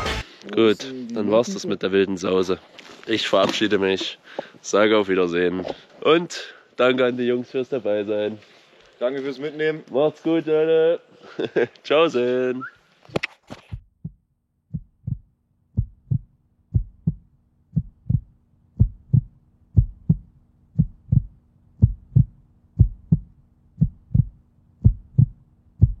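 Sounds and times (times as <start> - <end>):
heartbeat thumps: 13.7 - 26.0
faint steady hum: 14.7 - 26.0.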